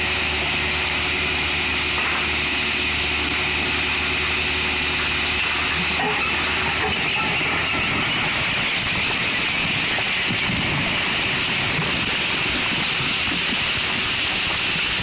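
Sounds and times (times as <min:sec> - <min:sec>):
excavator diesel engine running: 0:00.0 - 0:15.0
high-pitched whine: 0:00.0 - 0:15.0.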